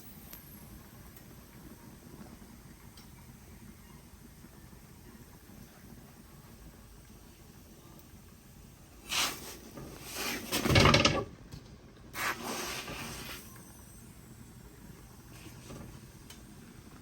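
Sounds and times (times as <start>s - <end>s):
handling scrapes: 9.0s - 11.0s, 12.2s - 13.4s.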